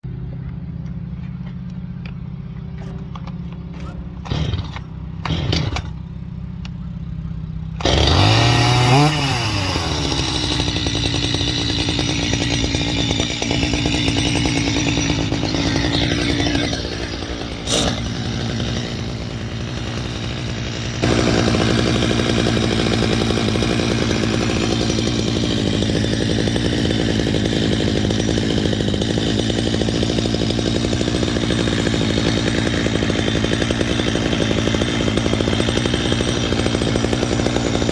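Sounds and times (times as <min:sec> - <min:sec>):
chainsaw engine revving: 0:03.2 - 0:06.2, 0:07.7 - 0:37.9.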